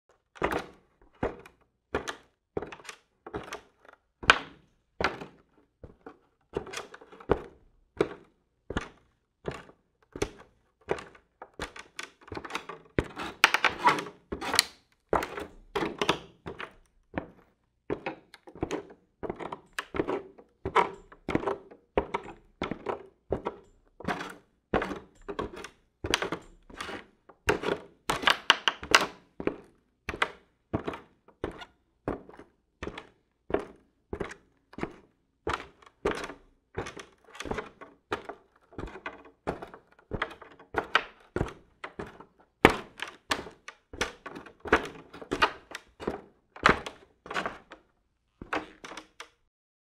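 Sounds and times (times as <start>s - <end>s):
boots walking on wooden floorboards: 0.4s - 3.6s, 4.2s - 47.8s
floorboards creaking: 5.0s - 30.2s.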